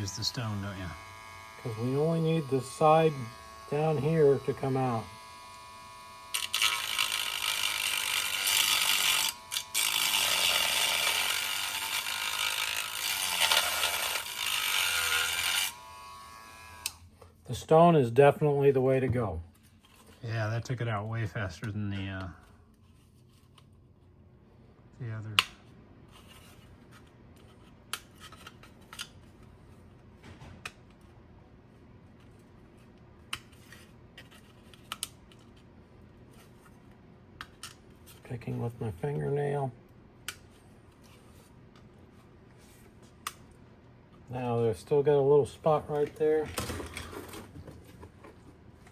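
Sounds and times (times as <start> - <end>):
rotary tool grinding plastic: 6.3 - 15.8.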